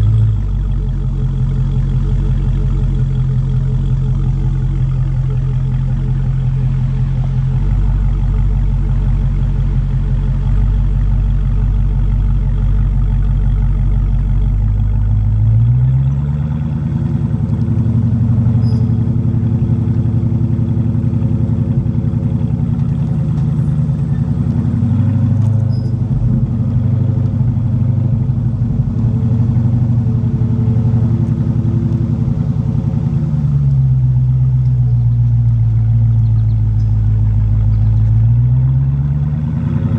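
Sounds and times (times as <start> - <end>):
car engine revving through exhaust: 0.0 - 39.9.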